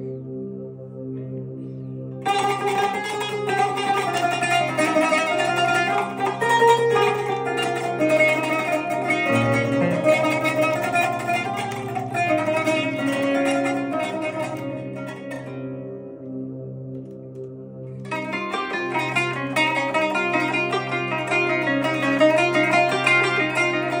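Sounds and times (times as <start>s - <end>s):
low sustained backing tone: 0.0s - 24.0s
plucked zither runs: 2.3s - 15.5s.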